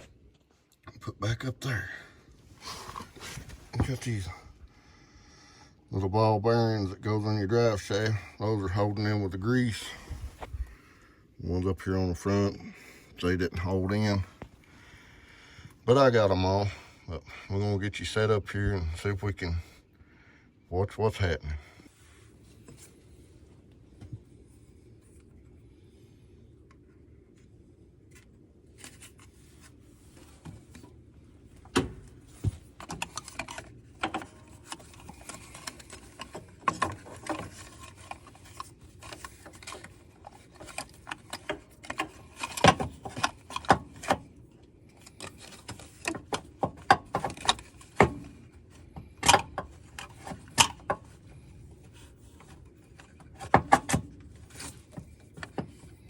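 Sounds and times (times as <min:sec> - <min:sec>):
faint steady hum: 0:00.0 - 0:56.0
metal clicks knocks and scraping: 0:31.5 - 0:56.0.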